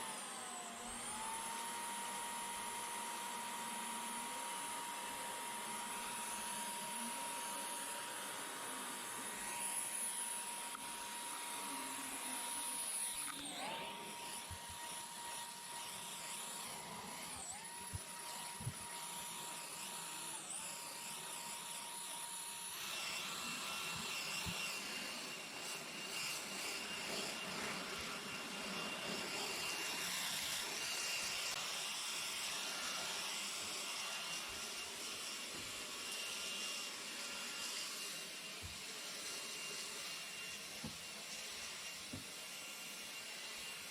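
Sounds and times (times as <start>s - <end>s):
stick vacuum cleaner running: 0.0s - 43.9s.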